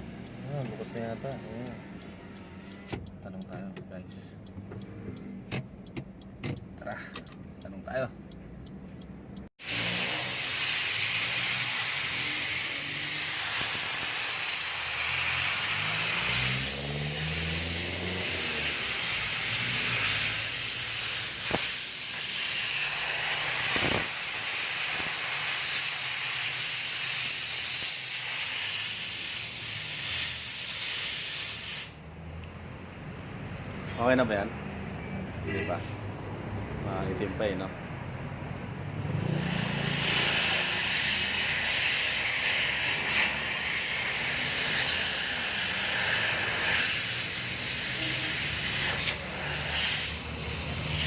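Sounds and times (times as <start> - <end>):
air blow gun hissing: 9.6 - 32.0, 38.9 - 51.0.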